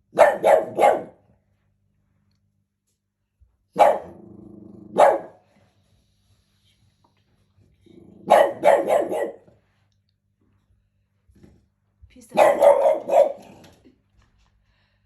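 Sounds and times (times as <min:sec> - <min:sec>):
small dog barking: 0:00.1 - 0:01.2, 0:03.7 - 0:04.2, 0:04.9 - 0:05.4, 0:08.2 - 0:09.5, 0:12.3 - 0:13.6
dog growling: 0:04.0 - 0:05.0.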